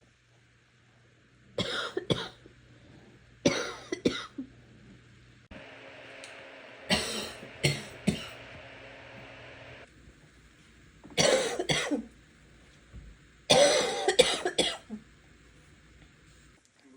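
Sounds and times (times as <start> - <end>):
person coughing wetly: 1.6 - 2.4, 3.5 - 4.4, 6.9 - 8.4, 11.2 - 12.1, 13.5 - 15.0.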